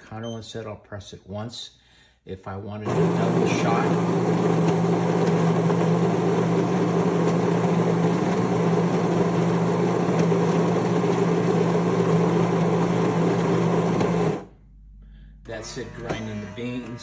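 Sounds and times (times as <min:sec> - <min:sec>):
coffee grinder grinding beans: 0:02.9 - 0:14.5.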